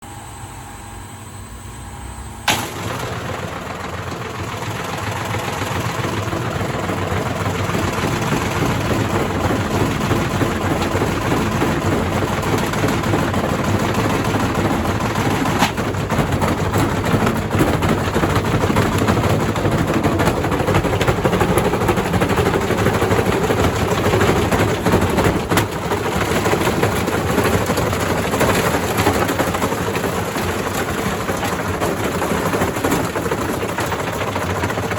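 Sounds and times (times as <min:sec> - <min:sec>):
bricks banging in washing machine drum: 0:06.4 - 0:34.9.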